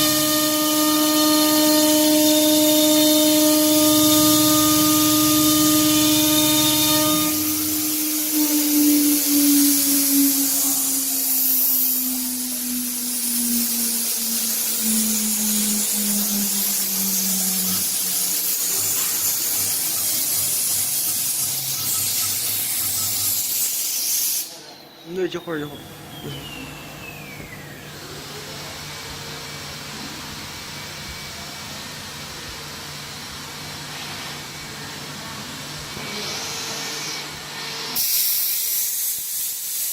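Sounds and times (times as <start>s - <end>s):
router bit cutting wood: 0.0s - 13.1s
router spindle humming and whining: 0.0s - 20.5s, 24.6s - 38.0s
low machine tone: 0.0s - 23.3s, 24.5s - 37.7s
loud hiss: 0.0s - 26.0s, 35.9s - 39.9s.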